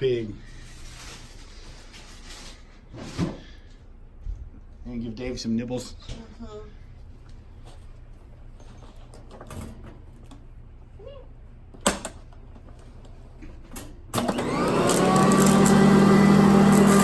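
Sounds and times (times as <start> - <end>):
vacuum cleaner motor running: 14.2 - 17.0.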